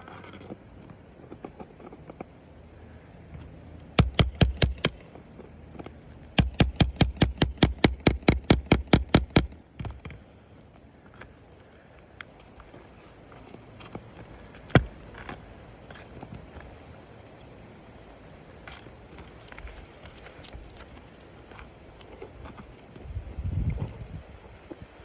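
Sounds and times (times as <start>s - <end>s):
hammer striking metal: 4.0s - 5.0s, 6.4s - 9.6s.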